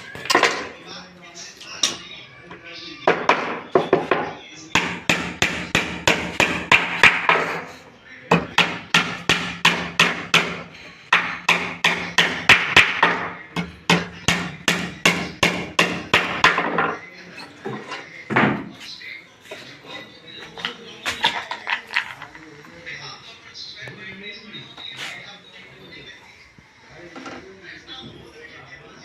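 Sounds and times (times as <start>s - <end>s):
hammer striking wood: 3.1s - 7.6s, 8.3s - 17.0s.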